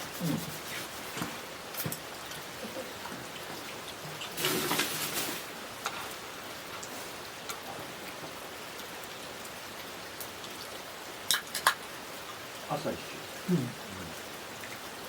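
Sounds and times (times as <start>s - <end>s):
steady rain: 0.0s - 15.0s
raindrops ticking: 1.1s - 15.0s.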